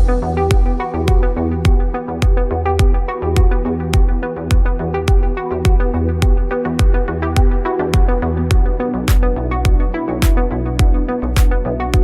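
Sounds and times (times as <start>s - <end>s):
electronic house music: 0.0s - 12.0s.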